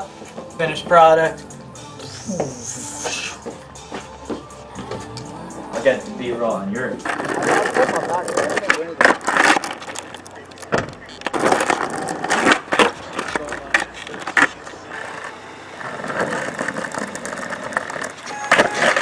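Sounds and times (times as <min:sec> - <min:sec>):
skateboard rolling: 0:03.0 - 0:19.0
skateboard clacks: 0:07.0 - 0:19.0.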